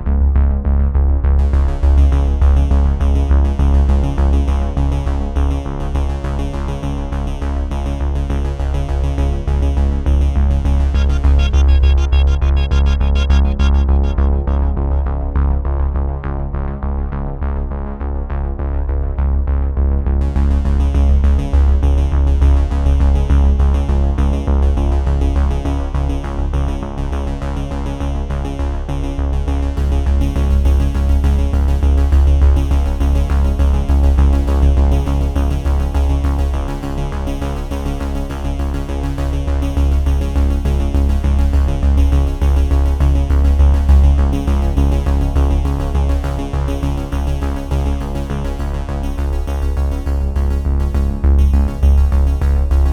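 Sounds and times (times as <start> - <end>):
electronic music with bass beat: 10.0 - 16.2, 39.8 - 52.9.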